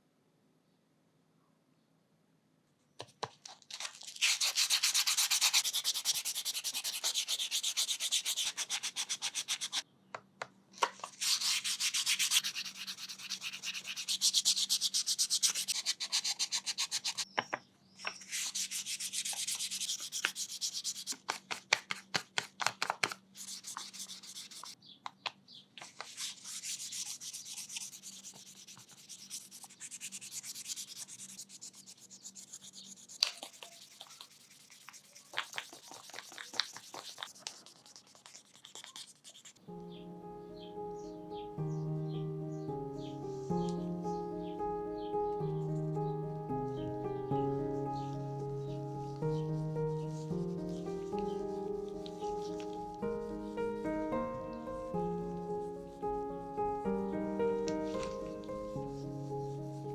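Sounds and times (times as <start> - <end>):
sandpaper rubbing on wood: 4.2 - 9.8, 11.1 - 17.3, 18.2 - 22.0, 23.4 - 24.8, 26.0 - 39.6.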